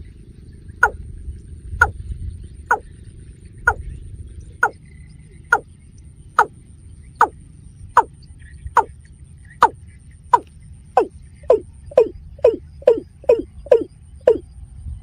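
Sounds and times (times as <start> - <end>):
bird calling hollow notes: 0.8 - 1.0, 1.8 - 2.0, 2.6 - 2.9, 3.6 - 4.0, 4.6 - 4.8, 5.4 - 5.7, 6.4 - 8.9, 9.5 - 14.4.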